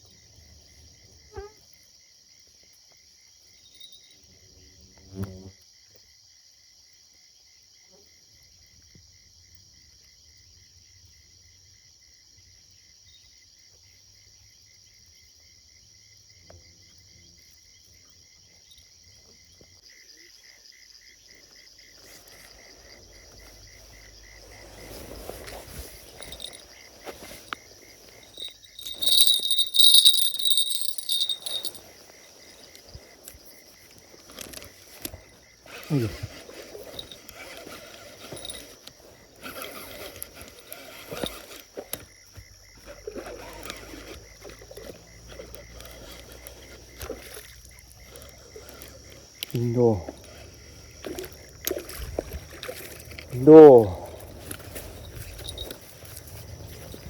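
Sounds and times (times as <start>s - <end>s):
crickets chirping: 0.0s - 57.0s
rustling: 24.4s - 33.4s, 34.1s - 41.6s
bite bell jingling: 26.1s - 27.4s, 28.1s - 31.8s, 38.2s - 38.6s, 54.8s - 56.1s.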